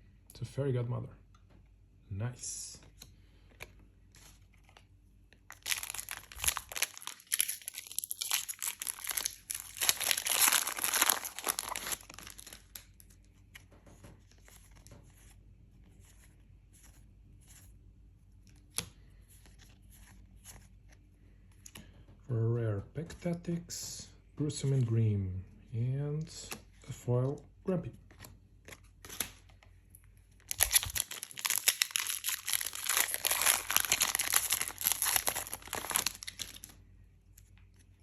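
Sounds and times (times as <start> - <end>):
trading cards being handled: 2.8 - 17.8, 30.4 - 36.7
foil wrapper tearing and crinkling: 5.5 - 13.0, 30.4 - 36.7.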